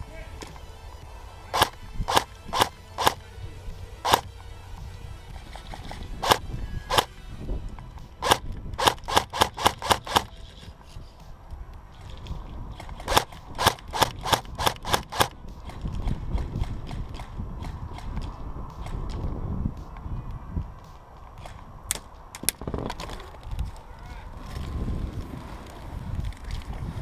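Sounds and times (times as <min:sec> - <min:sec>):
low rumbling noise: 0:00.0 - 0:27.0
airsoft guns firing: 0:01.5 - 0:03.2, 0:04.0 - 0:04.3, 0:08.2 - 0:10.3, 0:13.1 - 0:15.8.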